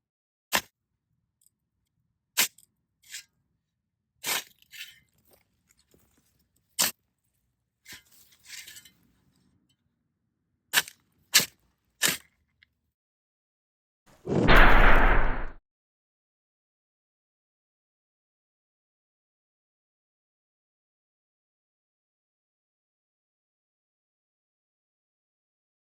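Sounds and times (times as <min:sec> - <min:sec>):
shovel scraping soil: 0:02.4 - 0:03.3, 0:04.2 - 0:05.4, 0:07.9 - 0:09.1, 0:10.8 - 0:12.3.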